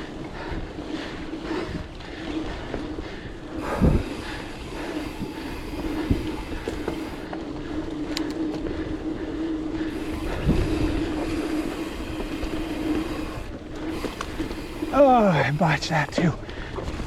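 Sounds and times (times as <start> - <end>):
bike tyres buzzing on dirt: 0.0 - 17.0
wind rushing: 8.7 - 15.0
bike thumping over bumps: 16.7 - 17.0.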